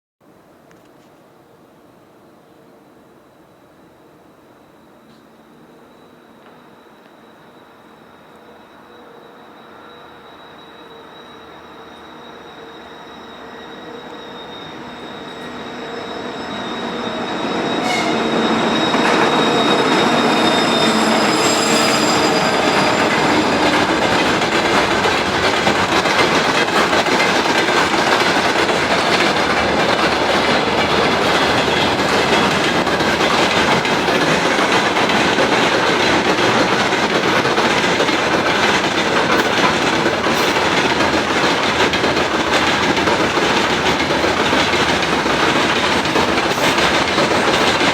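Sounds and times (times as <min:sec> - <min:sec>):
train wheels rumbling: 0:06.1 - 0:47.9
turbocharger whistle: 0:10.3 - 0:24.5
wheels clattering over rail joints: 0:22.6 - 0:47.9.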